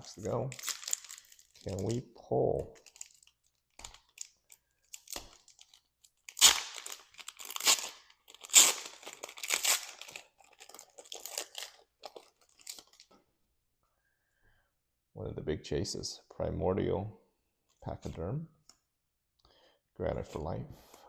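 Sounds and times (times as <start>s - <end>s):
wrapper being torn open: 0.0s - 2.0s, 2.6s - 13.1s
rustling of wrapper and cards: 0.0s - 13.2s.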